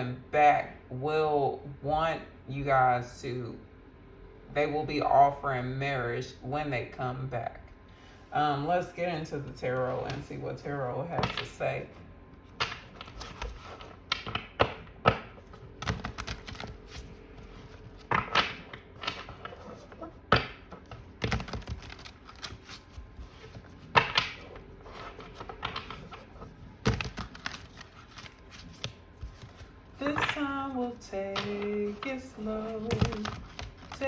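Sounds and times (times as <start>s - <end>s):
cards being shuffled: 12.4s - 34.0s.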